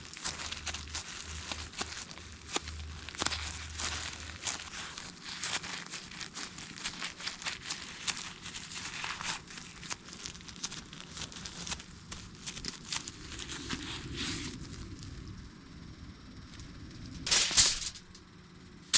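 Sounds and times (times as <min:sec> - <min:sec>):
packaging crinkling: 0:00.0 - 0:15.1, 0:17.3 - 0:18.1.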